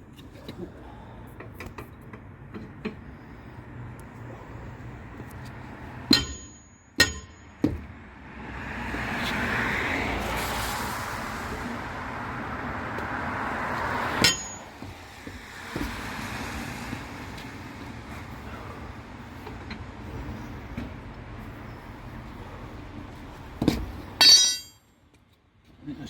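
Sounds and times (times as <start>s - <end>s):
road traffic hum: 0.0s - 26.0s
wheel brace clanging on wheel nuts: 6.1s - 7.9s, 14.1s - 16.0s, 23.6s - 24.8s.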